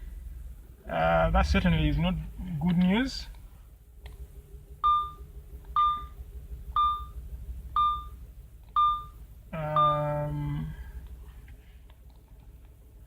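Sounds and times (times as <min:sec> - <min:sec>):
long low warning tone: 0:00.0 - 0:11.6
misfiring engine idling: 0:00.0 - 0:13.0
dashboard warning beeps: 0:04.8 - 0:10.8.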